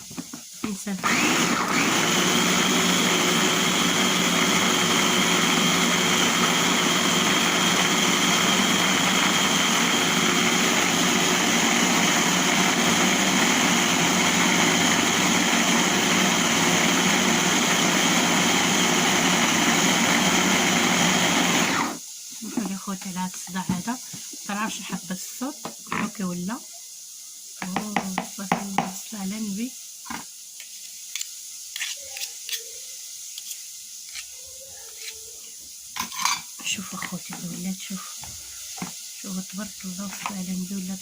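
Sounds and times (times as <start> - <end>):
electric blender motor whining: 1.0 - 22.0.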